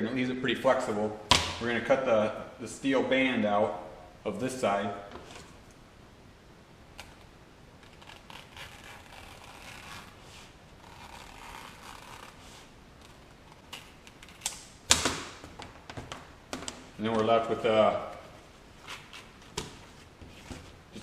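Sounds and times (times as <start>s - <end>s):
wire snapping: 13.5s - 16.8s.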